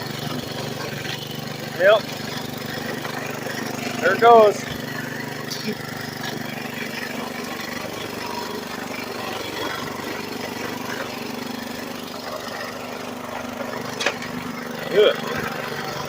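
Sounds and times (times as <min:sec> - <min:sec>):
mower engine running: 0:00.0 - 0:16.0.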